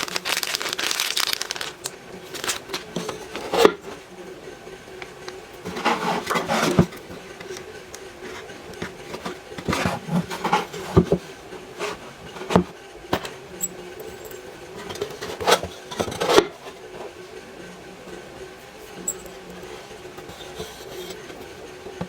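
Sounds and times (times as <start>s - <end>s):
wooden box rubbing and scraping: 5.6s - 7.6s, 8.2s - 12.7s.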